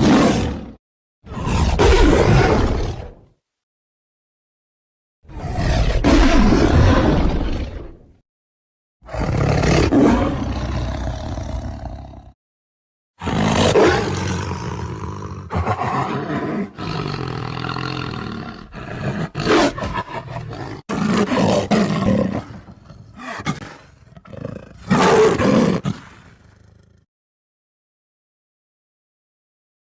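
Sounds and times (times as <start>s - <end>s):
tiger roaring and growling: 0.0s - 3.3s, 5.3s - 8.1s, 9.0s - 12.4s, 13.2s - 27.0s.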